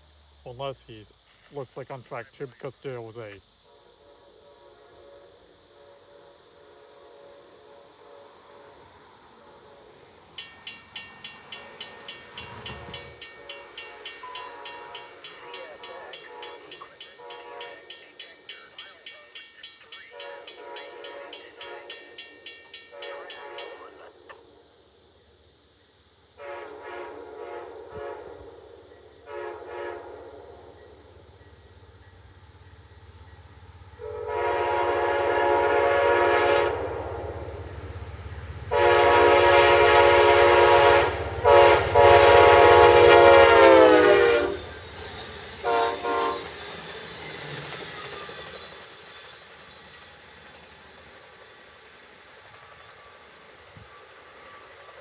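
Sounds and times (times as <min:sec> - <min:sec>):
low locomotive engine rumble: 0:00.0 - 0:55.0
locomotive air horn: 0:17.2 - 0:17.9, 0:20.1 - 0:22.2, 0:22.9 - 0:24.0, 0:26.4 - 0:30.7, 0:34.0 - 0:37.5, 0:38.7 - 0:46.6.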